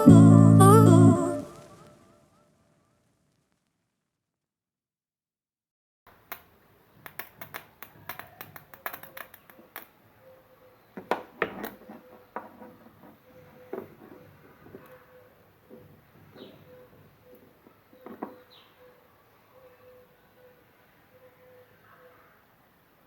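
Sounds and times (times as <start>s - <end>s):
small objects clicking and tapping: 6.1s - 10.0s.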